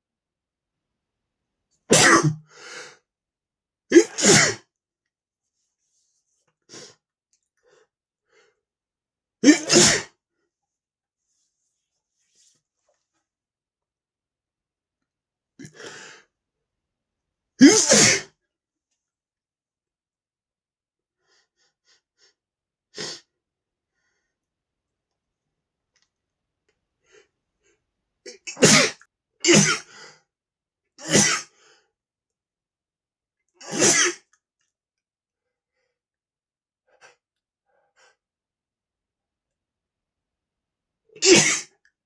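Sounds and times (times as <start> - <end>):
man sneezing: 1.9 - 2.4, 3.9 - 4.6, 9.4 - 10.1, 17.6 - 18.3, 28.5 - 29.9, 31.0 - 31.5, 33.6 - 34.3, 41.2 - 41.7.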